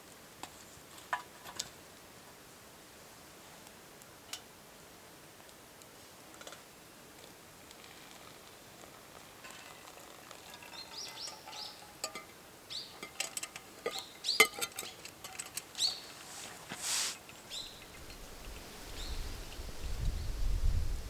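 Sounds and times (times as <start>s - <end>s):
sharp clicks and clinks: 10.5s - 12.4s, 13.0s - 16.2s
small bird chirping: 10.7s - 12.0s, 12.7s - 13.0s, 13.9s - 15.0s, 15.7s - 20.9s
brief hiss: 15.9s - 20.2s.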